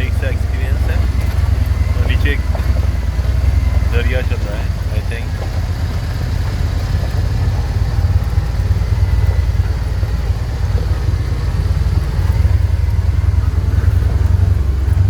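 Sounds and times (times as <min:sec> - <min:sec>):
dune buggy engine rumbling: 0:00.0 - 0:15.0.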